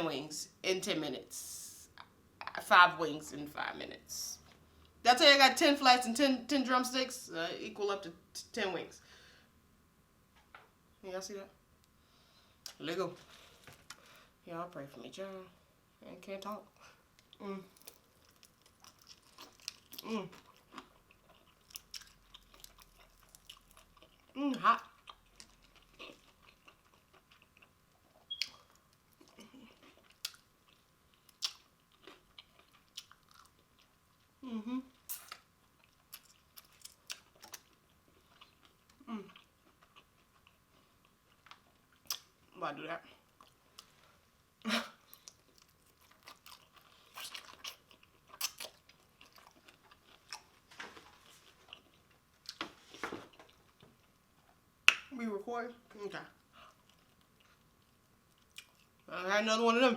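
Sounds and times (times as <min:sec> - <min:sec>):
chewing crispy food: 0:16.8 - 0:42.6, 0:45.0 - 0:54.6, 0:56.4 - 0:59.1
biting and chewing chicken: 0:17.7 - 0:34.3.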